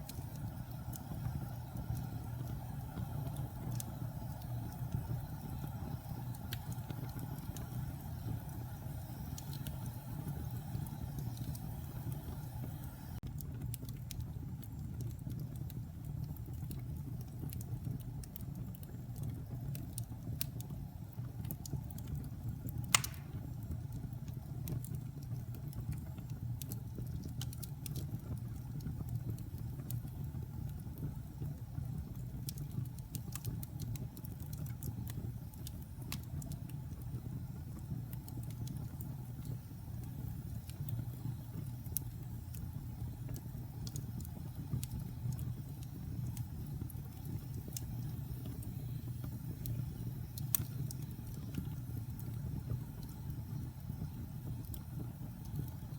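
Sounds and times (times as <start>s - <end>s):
fire crackling: 0.0s - 55.9s
low rumble of flames: 0.0s - 55.9s
sharp pop from fire: 22.9s - 23.6s.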